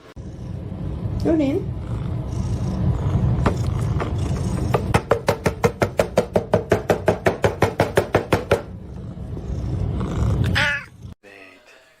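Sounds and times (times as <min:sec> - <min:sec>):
low rumble: 0:00.2 - 0:04.9
cat meow: 0:10.4 - 0:11.1.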